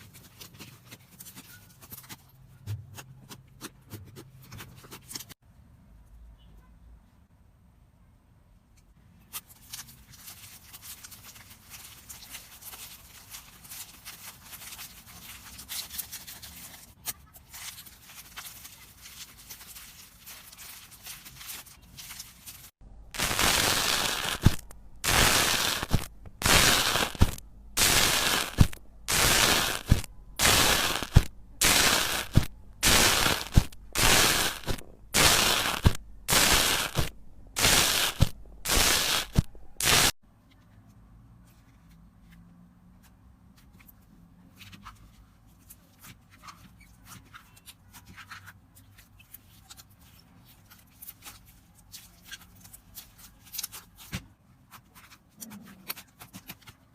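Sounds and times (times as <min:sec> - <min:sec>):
loud crackly slime presses: 0:23.1 - 0:40.2
slime crackling and popping: 0:23.1 - 0:40.2.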